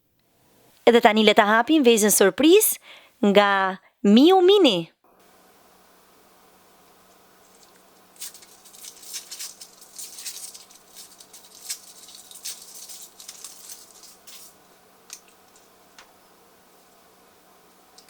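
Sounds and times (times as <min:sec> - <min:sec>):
foil wrapper crinkling: 0:07.4 - 0:15.7.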